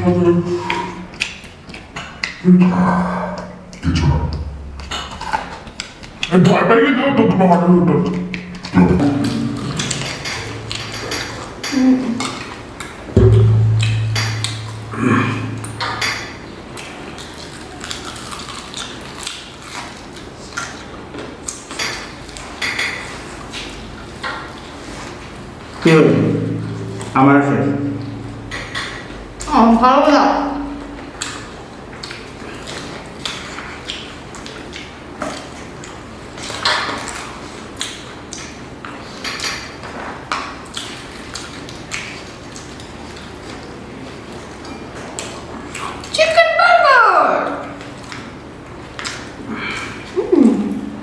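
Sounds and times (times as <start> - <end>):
dishes and food containers clattering: 9.0 - 13.2
crunching fried chicken: 16.8 - 21.6.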